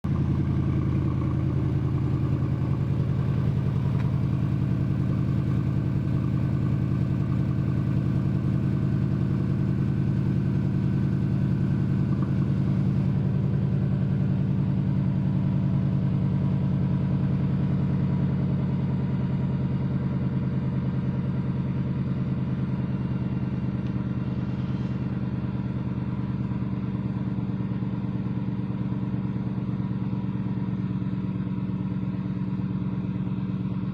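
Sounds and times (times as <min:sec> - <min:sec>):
engine idling: 0:00.0 - 0:33.9.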